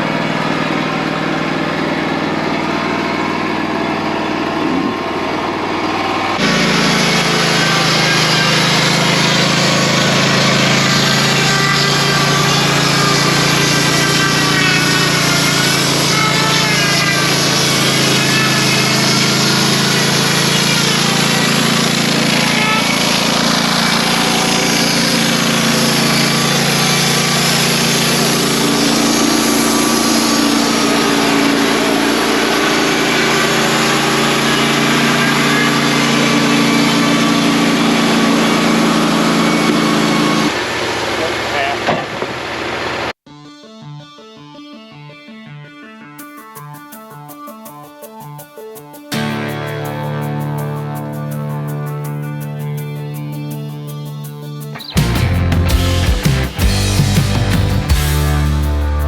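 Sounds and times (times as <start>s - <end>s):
band sawmill cutting log: 0.0s - 43.2s, 54.8s - 59.0s.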